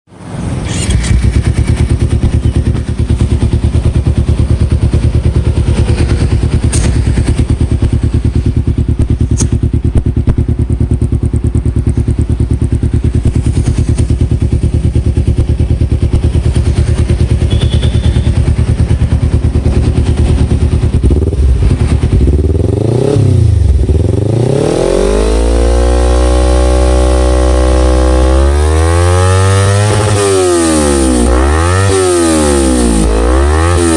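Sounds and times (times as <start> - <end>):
motorcycle engine revving: 0.2 - 33.9
motorcycle engine idling: 0.7 - 24.3.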